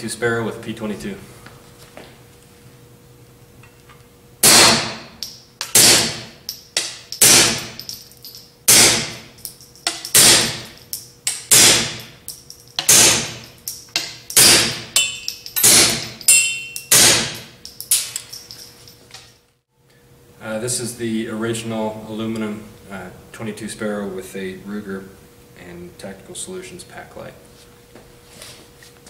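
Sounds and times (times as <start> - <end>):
light metallic clinks: 6.5 - 8.5, 15.0 - 19.4.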